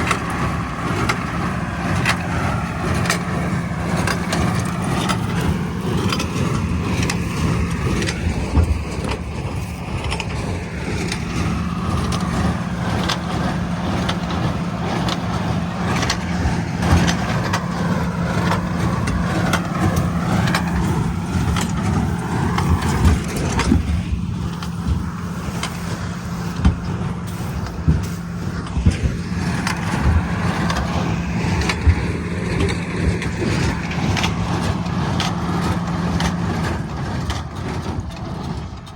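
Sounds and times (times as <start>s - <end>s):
tractor engine hum: 0.0s - 38.9s
baler clunks and knocks: 13.0s - 34.5s.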